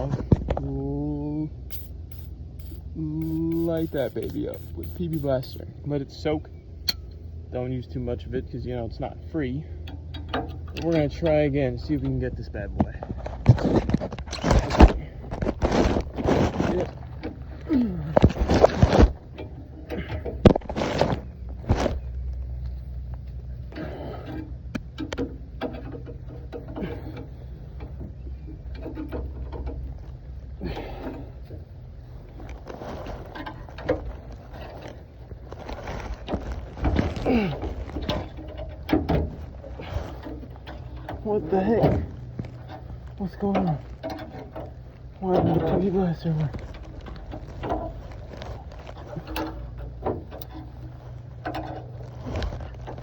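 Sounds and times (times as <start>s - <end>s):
screwdriver scraping metal: 1.7s - 5.6s.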